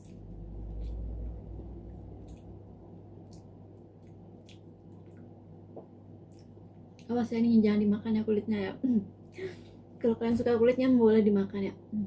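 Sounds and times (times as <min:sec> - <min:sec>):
low rumble: 0:00.0 - 0:06.7
wet chewing sounds: 0:00.0 - 0:07.1
lip smacks: 0:03.2 - 0:07.1.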